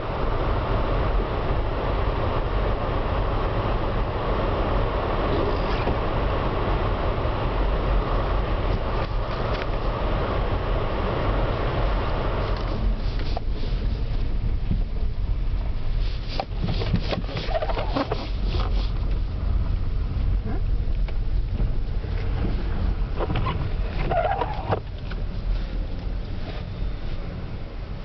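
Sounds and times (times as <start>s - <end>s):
car driving on snowy road: 0.0s - 28.0s
short squeaks: 23.4s - 24.8s.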